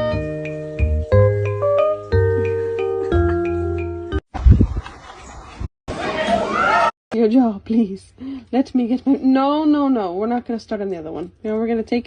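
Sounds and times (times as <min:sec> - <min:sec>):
background music with bass line: 0:00.0 - 0:04.2.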